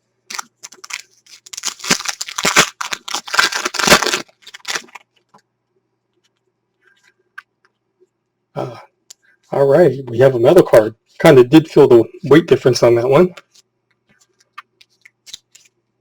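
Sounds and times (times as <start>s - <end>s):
foil wrapper crinkling and tearing: 0.3s - 5.1s.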